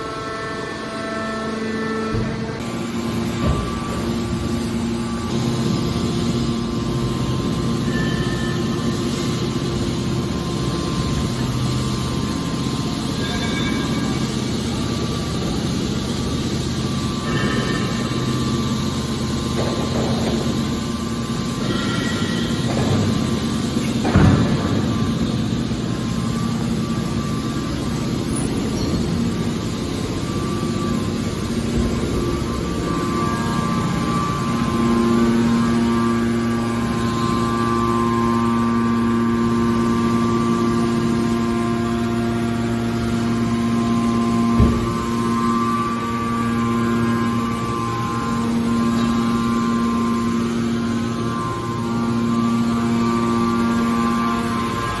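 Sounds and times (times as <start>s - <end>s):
baler shear mechanical drone: 0.0s - 55.0s
hydraulic unit low hum: 0.0s - 55.0s
loud metal clank: 21.6s - 25.9s.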